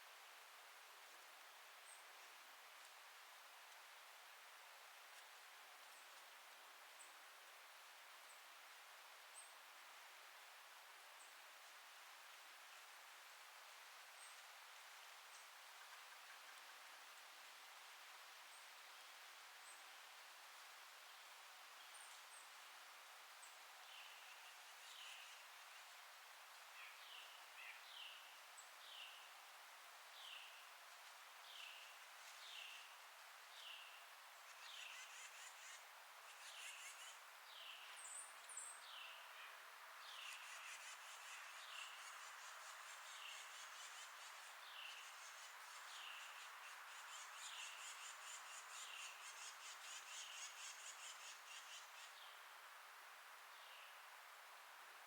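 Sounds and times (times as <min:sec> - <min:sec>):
wind in trees: 0:00.0 - 0:55.0
steady hiss: 0:39.6 - 0:55.0.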